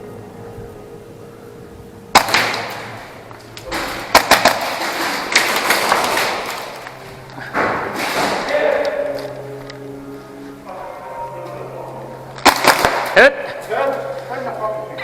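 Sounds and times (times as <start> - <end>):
airsoft gun cracks: 2.1 - 7.0, 12.4 - 13.3.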